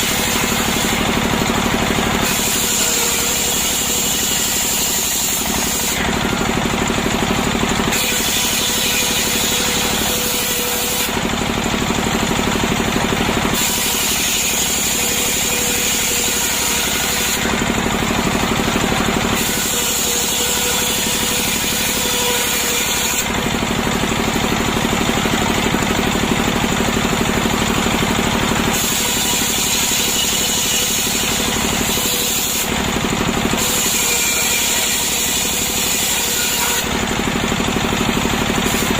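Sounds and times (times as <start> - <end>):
chainsaw cutting log: 0.0 - 38.9.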